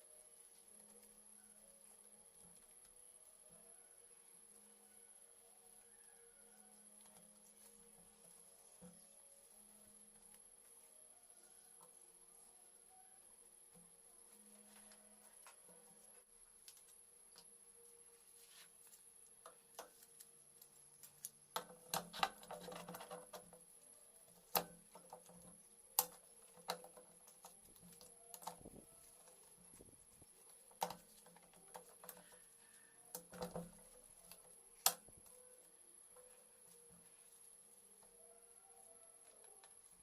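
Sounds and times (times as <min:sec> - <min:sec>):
metal parts clicking and knocking: 0:21.5 - 0:23.7.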